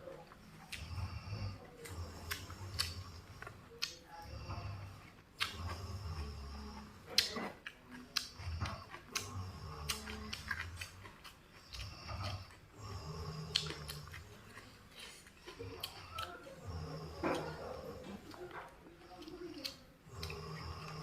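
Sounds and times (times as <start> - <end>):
chewing raw vegetables: 0.0 - 21.0.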